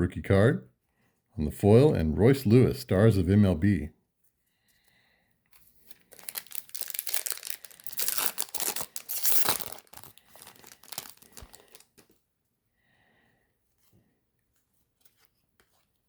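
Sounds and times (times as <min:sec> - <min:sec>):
plastic wrapper tearing and crinkling: 0:05.8 - 0:12.1.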